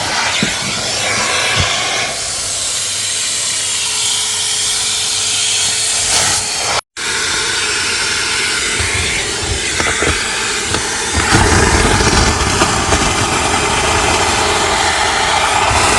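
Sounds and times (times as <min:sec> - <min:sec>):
vacuum cleaner running: 0:00.0 - 0:15.9.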